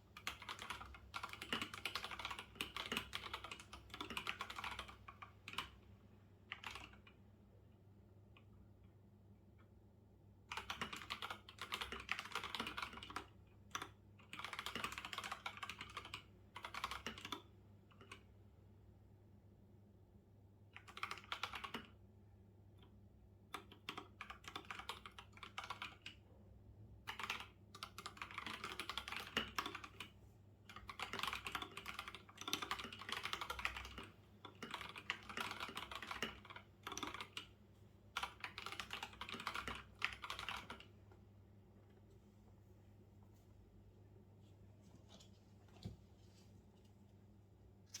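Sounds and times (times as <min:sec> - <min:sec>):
typing on computer keyboard: 0:00.1 - 0:05.8, 0:06.5 - 0:07.2, 0:10.4 - 0:18.3, 0:20.7 - 0:22.0, 0:23.5 - 0:26.2, 0:27.0 - 0:30.1, 0:30.7 - 0:37.5, 0:38.1 - 0:41.0.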